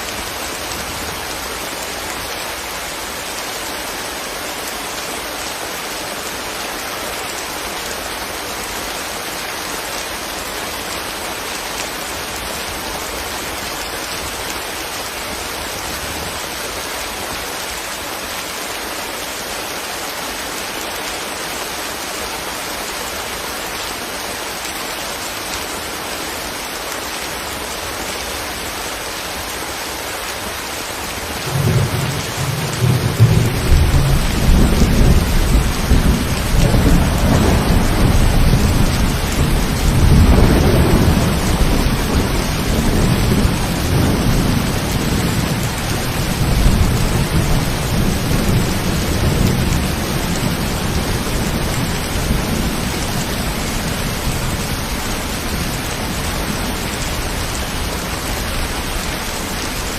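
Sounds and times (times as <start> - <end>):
heavy rain hissing: 0.0 - 59.9
deep rumble of thunder: 31.4 - 54.6.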